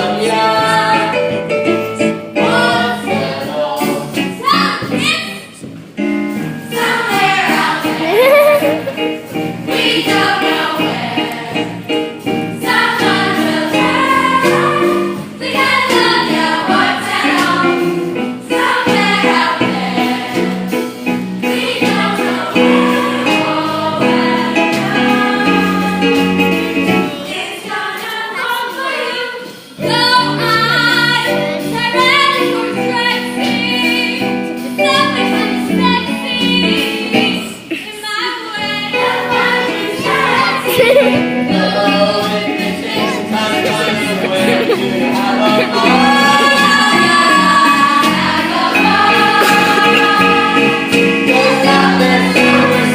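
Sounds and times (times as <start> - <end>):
people singing: 0.0 - 1.4, 2.4 - 4.4, 6.7 - 26.4, 27.0 - 34.4, 38.3 - 52.9
instrumental accompaniment: 0.3 - 27.2, 38.9 - 52.9.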